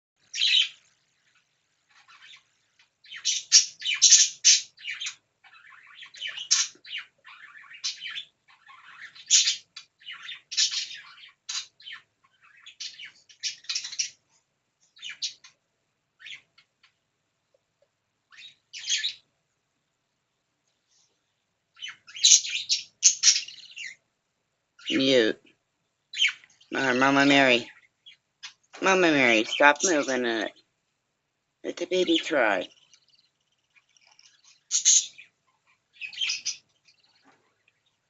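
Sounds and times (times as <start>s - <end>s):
baby bird chirps and squawks: 0.3s - 0.8s, 3.1s - 14.3s, 15.0s - 15.6s, 18.3s - 19.3s, 21.8s - 24.1s, 26.1s - 28.6s, 32.1s - 37.2s.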